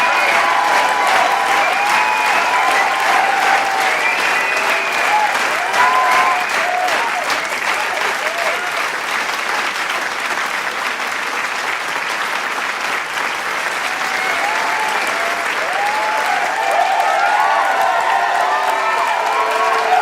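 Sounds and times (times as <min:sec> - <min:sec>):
people cheering and whooping: 0:00.0 - 0:08.8, 0:13.8 - 0:20.0
crowd applauding: 0:00.0 - 0:20.0.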